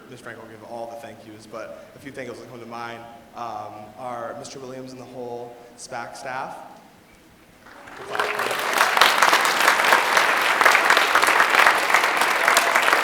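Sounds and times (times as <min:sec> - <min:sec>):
audience applauding: 0:07.6 - 0:13.0.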